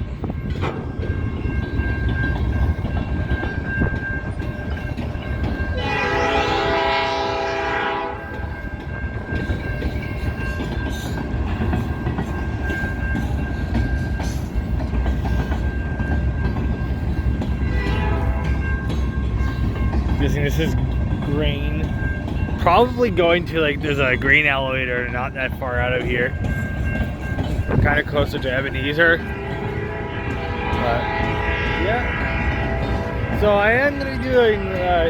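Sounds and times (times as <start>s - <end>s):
freight train wheels rumbling: 0.0s - 35.0s
train wheel clacks: 0.0s - 35.0s
locomotive horn: 5.8s - 8.4s, 17.7s - 18.6s, 29.2s - 34.0s.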